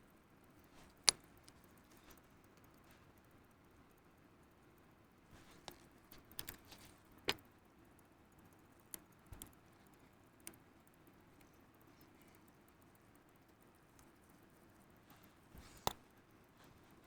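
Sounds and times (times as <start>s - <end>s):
metal tools clicking on watch parts: 0.6s - 2.9s, 5.4s - 7.5s, 8.7s - 16.1s.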